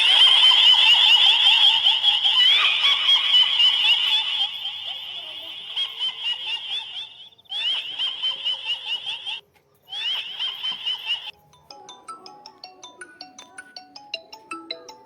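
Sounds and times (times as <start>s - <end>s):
shrill chattering horror effect: 0.0s - 11.3s.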